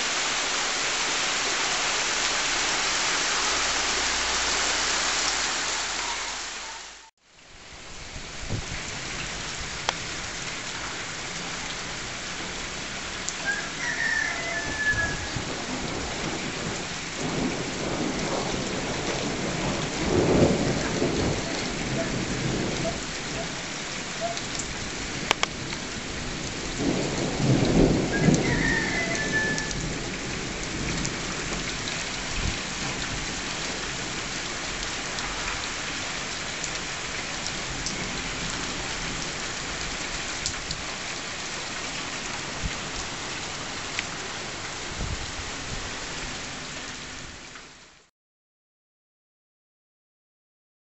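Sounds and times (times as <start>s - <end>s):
heavy rain: 0.0s - 48.1s
thunder rumbling: 15.0s - 33.4s.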